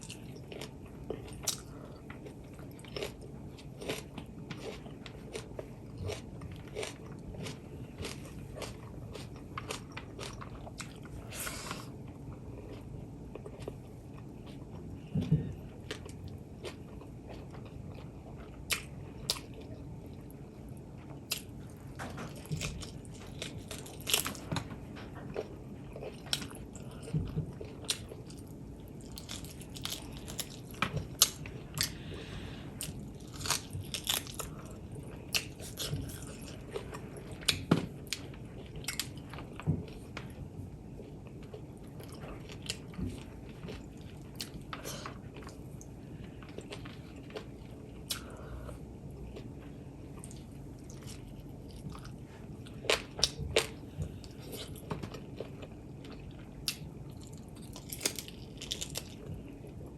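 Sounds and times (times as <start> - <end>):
biting and chewing: 0.0 - 20.3, 21.0 - 32.1, 32.8 - 40.4, 49.3 - 59.9
small crunches and wet smacks: 56.6 - 59.5.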